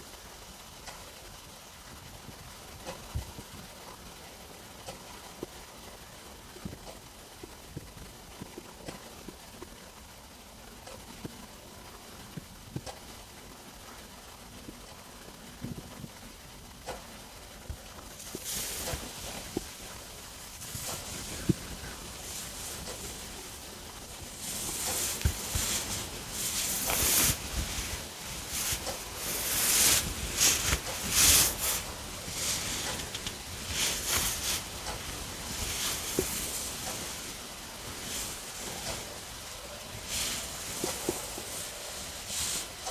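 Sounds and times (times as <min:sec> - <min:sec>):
stomach rumbling: 0:17.7 - 0:42.9.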